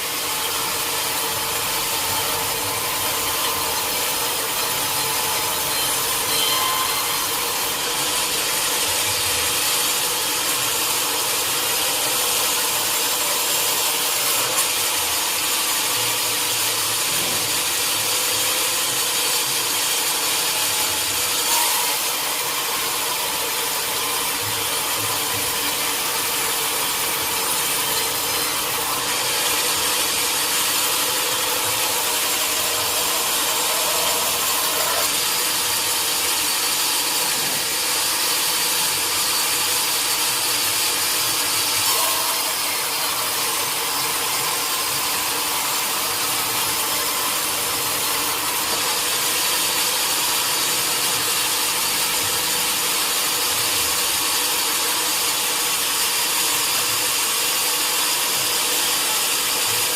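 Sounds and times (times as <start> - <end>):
sawmill saw cutting log: 0.0 - 59.9
mill motor running: 7.2 - 59.9.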